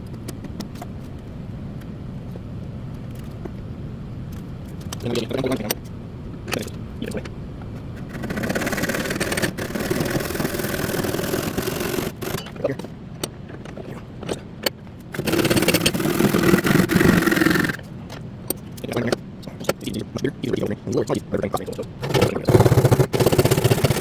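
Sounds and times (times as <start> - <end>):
saw cutting wood: 8.0 - 12.6, 15.1 - 17.8, 22.0 - 24.0.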